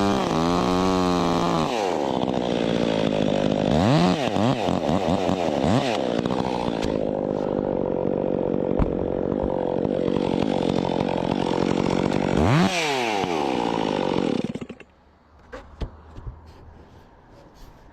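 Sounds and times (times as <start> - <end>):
chainsaw engine revving: 0.0 - 15.0.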